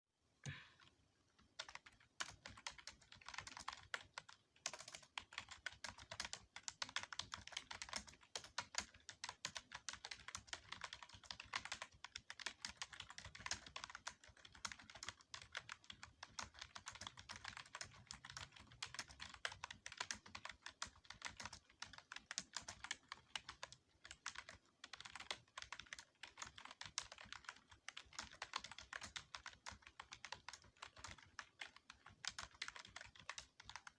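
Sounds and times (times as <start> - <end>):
typing on computer keyboard: 0.5 - 33.9.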